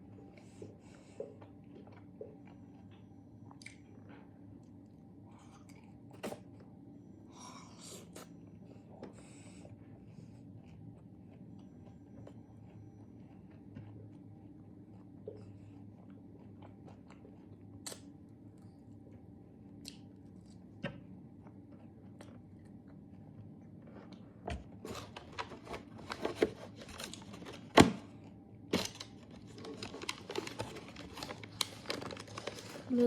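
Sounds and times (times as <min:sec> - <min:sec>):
crunchy chewing: 0:09.2 - 0:20.6.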